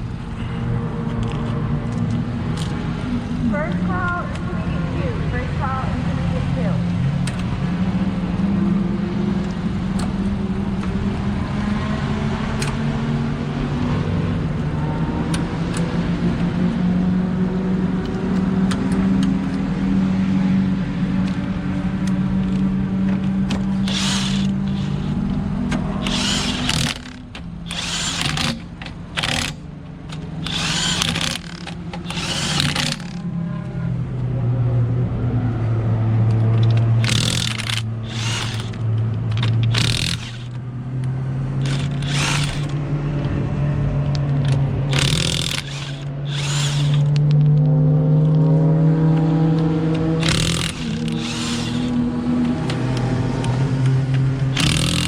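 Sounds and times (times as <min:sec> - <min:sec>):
low machine hum: 0:19.8 - 0:47.1
power tool bursts: 0:23.7 - 0:25.3, 0:26.0 - 0:29.6, 0:30.4 - 0:33.2, 0:37.0 - 0:38.8, 0:39.4 - 0:40.6, 0:41.6 - 0:42.8, 0:44.9 - 0:47.2, 0:50.2 - 0:52.0, 0:54.5 - 0:55.0.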